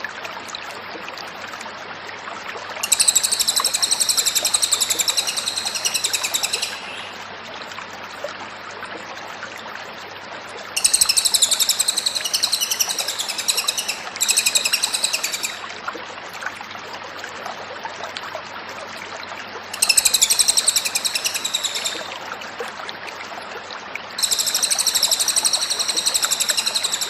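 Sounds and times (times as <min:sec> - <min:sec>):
faint bird chirps: 0:02.8 - 0:07.2, 0:10.8 - 0:15.7, 0:19.8 - 0:22.2, 0:24.2 - 0:27.0
songbird chattering trills: 0:02.8 - 0:07.2, 0:10.8 - 0:15.6, 0:19.8 - 0:22.1.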